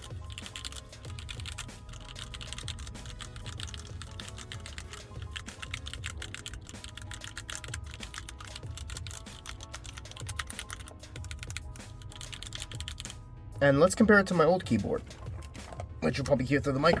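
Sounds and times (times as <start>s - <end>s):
mechanical keyboard keys clacking: 0.0s - 13.1s.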